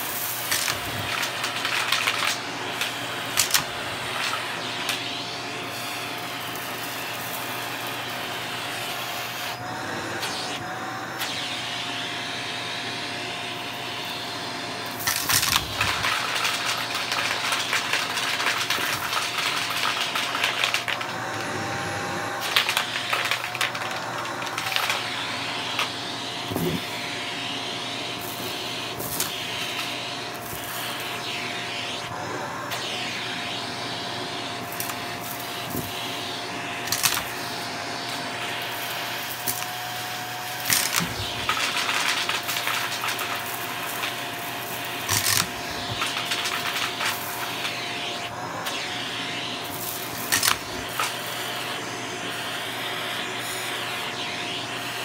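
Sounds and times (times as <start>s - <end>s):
vacuum cleaner motor whine: 0.0s - 55.0s
vacuum head scrubbing carpet: 0.0s - 55.0s.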